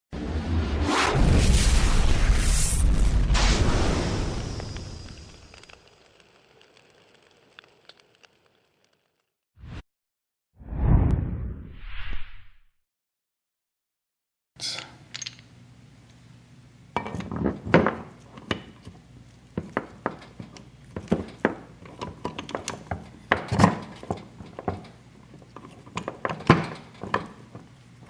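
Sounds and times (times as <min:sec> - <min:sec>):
metallic clinks of tools and parts: 0:14.8 - 0:15.5.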